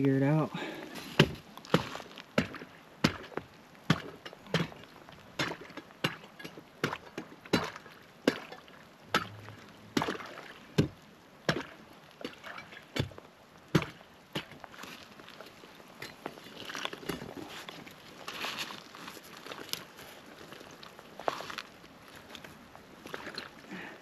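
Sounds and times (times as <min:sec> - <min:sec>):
chopping tool striking ice: 0:05.4 - 0:08.5, 0:13.7 - 0:14.6.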